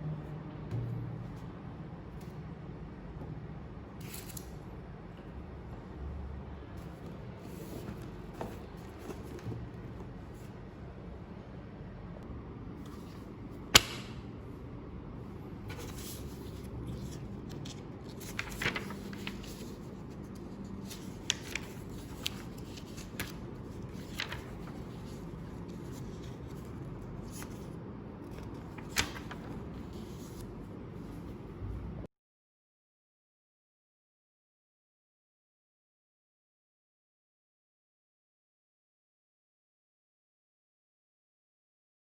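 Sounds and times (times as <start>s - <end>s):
low steady hum: 0.0s - 32.1s.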